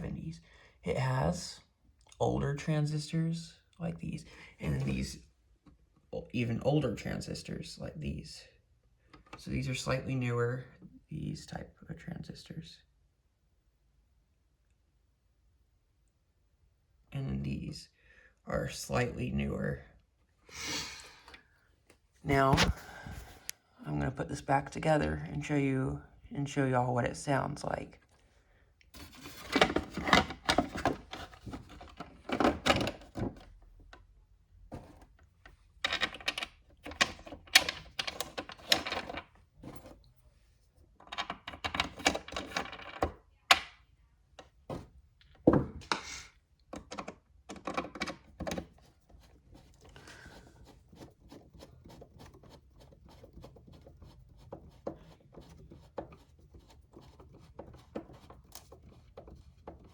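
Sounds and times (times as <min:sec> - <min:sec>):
plastic parts clattering: 0:29.0 - 0:34.0, 0:34.7 - 0:40.0, 0:41.0 - 0:43.7.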